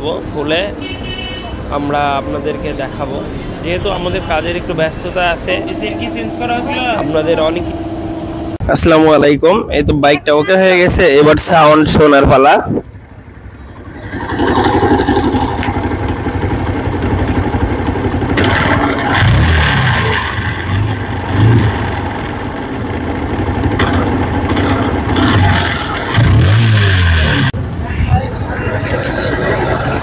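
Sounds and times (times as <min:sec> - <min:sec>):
motorcycle engine revving: 0:12.8 - 0:27.6.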